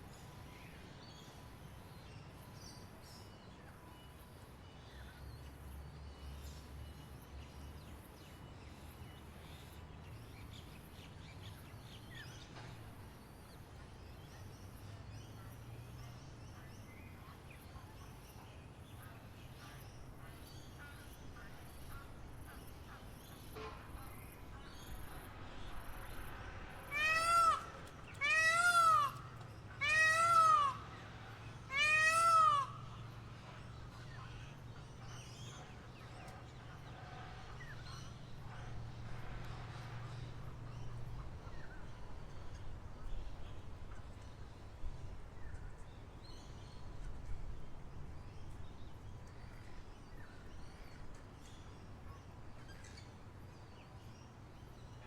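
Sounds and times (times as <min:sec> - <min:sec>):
loud drawn-out animal calls: 0:26.8 - 0:33.2.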